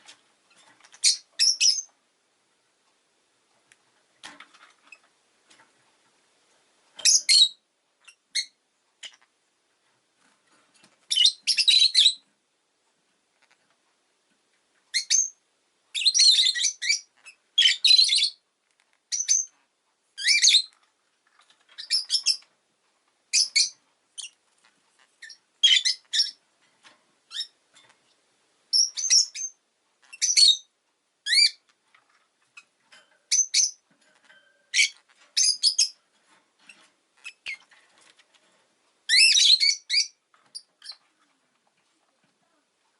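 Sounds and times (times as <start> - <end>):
lovebird chirping: 0.8 - 1.9, 7.0 - 9.3, 11.1 - 12.2, 14.9 - 18.4, 19.1 - 19.5, 20.2 - 20.8, 21.6 - 22.5, 23.3 - 26.4, 27.3 - 27.6, 28.7 - 31.7, 33.3 - 36.0, 37.2 - 37.7, 39.1 - 41.0.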